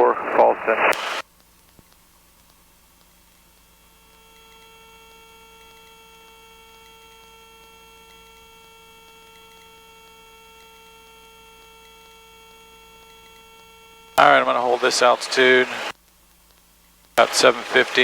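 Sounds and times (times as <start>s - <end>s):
helicopter whine in flight: 11.9s - 15.9s.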